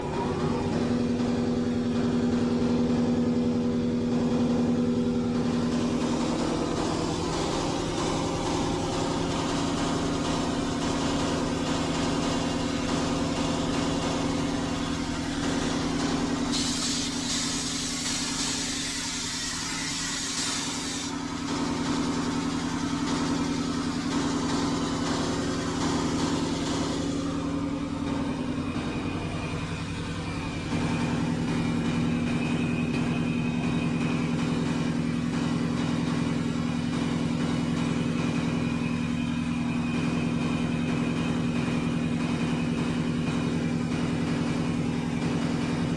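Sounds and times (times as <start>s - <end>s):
sander motor hum: 0.0s - 45.9s
grinding hiss: 4.6s - 38.2s.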